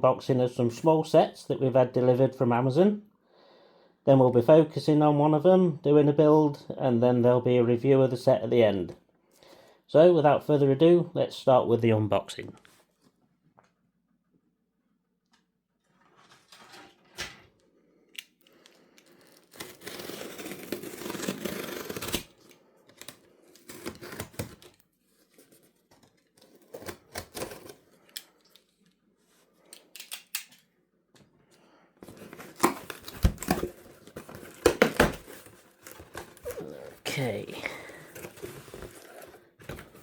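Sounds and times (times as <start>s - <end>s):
cardboard box tearing and rustling: 19.2s - 22.4s, 23.0s - 27.8s, 32.0s - 40.0s.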